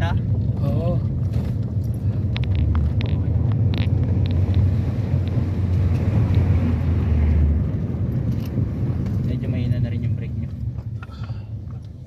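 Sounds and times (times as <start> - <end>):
car cabin engine and road rumble: 0.0 - 12.0.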